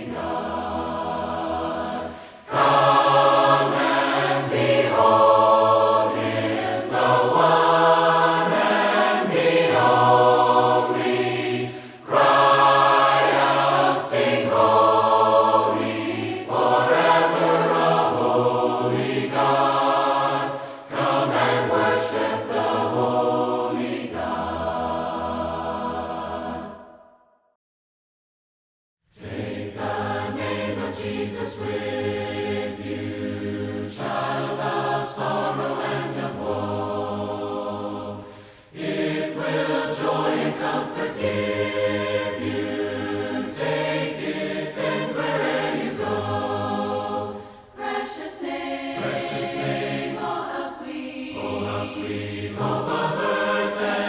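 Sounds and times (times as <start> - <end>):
group singing a hymn unaccompanied: 0.0 - 27.1, 29.1 - 54.0.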